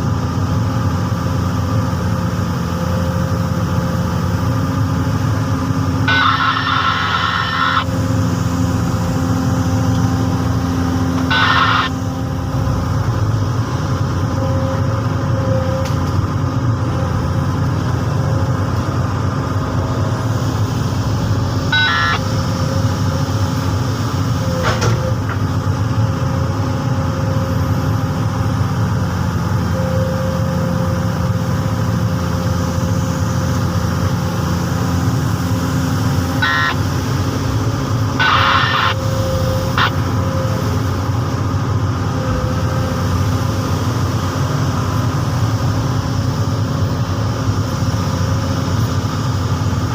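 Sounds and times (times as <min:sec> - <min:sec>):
excavator diesel engine running: 0:00.0 - 0:49.9
brief high squeals: 0:06.1 - 0:07.9, 0:11.2 - 0:12.0, 0:38.2 - 0:39.9.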